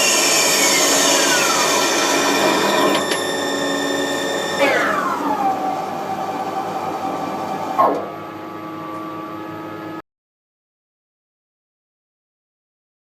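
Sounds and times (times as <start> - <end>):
lathe spindle whining: 0.0 - 8.7.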